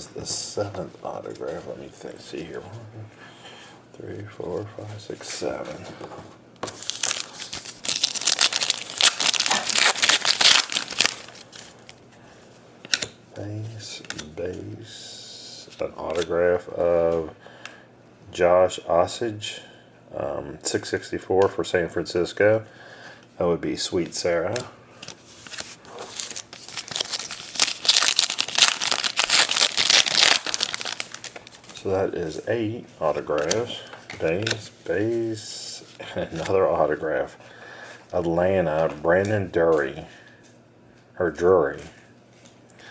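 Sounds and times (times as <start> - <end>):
plastic wrapper tearing and crinkling: 6.7 - 11.7, 25.4 - 31.9.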